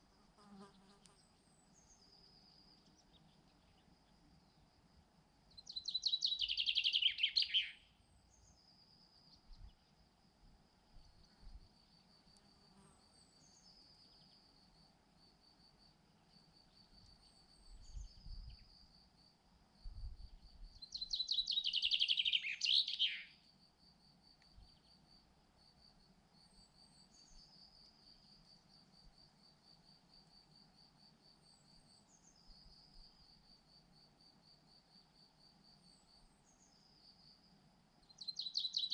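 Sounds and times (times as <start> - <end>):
faint high bird chirps: 5.5 - 9.9, 16.8 - 18.7, 20.2 - 23.4, 38.0 - 38.9
songbird singing falling notes: 20.8 - 23.3.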